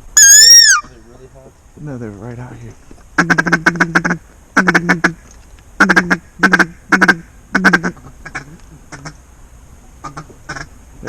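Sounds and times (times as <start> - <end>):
duck call quacks: 0.2 - 0.9, 3.2 - 5.2, 5.8 - 9.2, 10.0 - 10.7.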